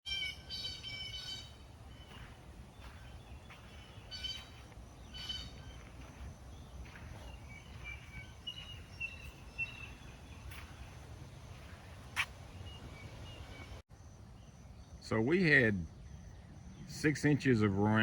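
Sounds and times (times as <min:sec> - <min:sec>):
harsh bird calls: 0:00.1 - 0:13.8
birds calling: 0:00.1 - 0:18.0.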